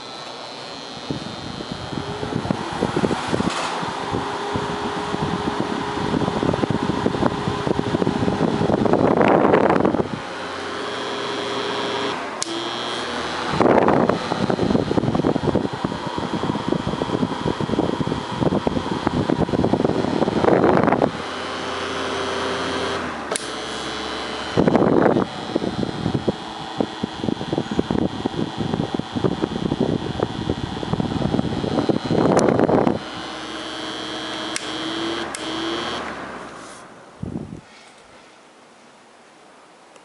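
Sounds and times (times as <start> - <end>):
airflow rushing over microphone: 0.0 - 10.7, 13.4 - 21.3, 23.1 - 38.3
electric fan motor hum: 0.0 - 37.6
short sharp clicks: 23.3 - 23.6, 34.3 - 36.2.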